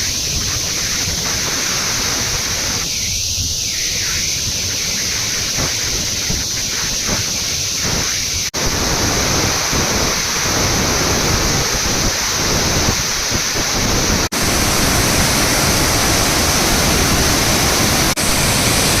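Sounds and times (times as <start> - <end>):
waterfall rushing water: 8.5 - 19.0.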